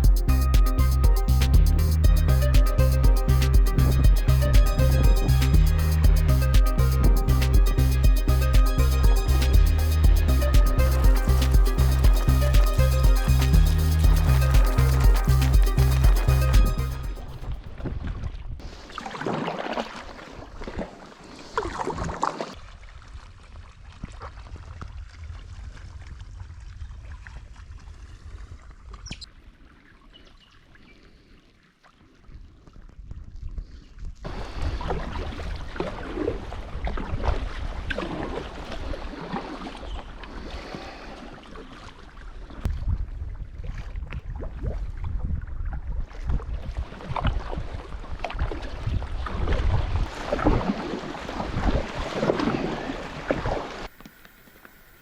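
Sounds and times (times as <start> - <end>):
paddle splashing in water: 17.2 - 24.5, 34.3 - 42.8, 45.9 - 53.9
wind on microphone: 42.7 - 53.9.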